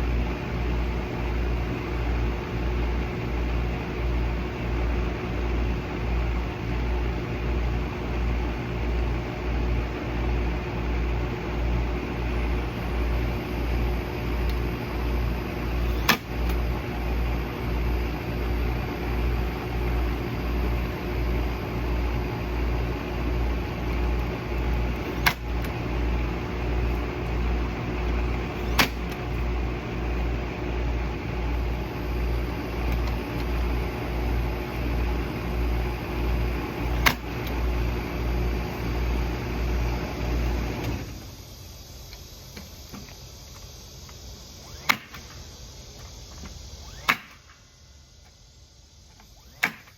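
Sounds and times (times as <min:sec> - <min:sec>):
machine motor throbbing: 0:06.0 - 0:41.3.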